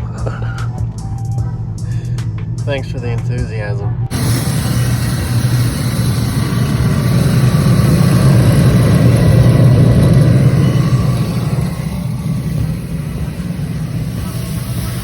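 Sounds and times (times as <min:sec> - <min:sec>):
engine running: 0:04.1 - 0:15.0.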